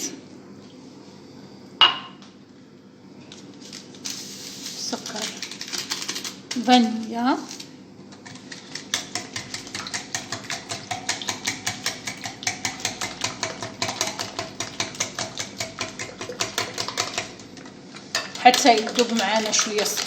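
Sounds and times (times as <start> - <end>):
utensil beating batter in bowl: 8.2 - 20.0.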